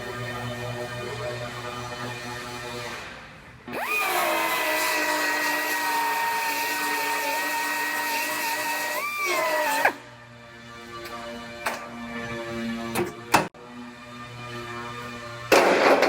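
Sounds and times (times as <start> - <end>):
power tool high-pitched whine: 3.7 - 10.1.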